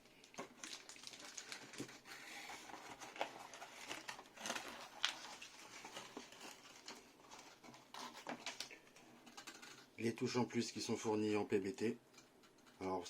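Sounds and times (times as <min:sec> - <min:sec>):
plastic packaging rustling: 0:00.0 - 0:09.9.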